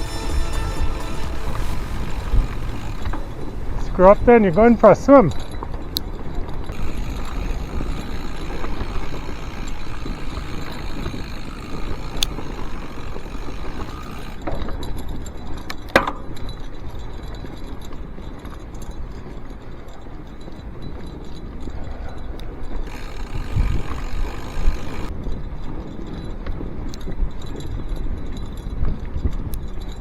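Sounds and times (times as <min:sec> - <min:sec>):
bike tyres rolling through snow: 0:00.0 - 0:30.0.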